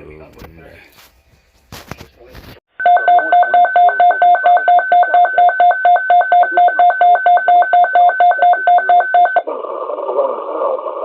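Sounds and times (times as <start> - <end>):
two-tone electronic alarm beeps: 2.8 - 9.4.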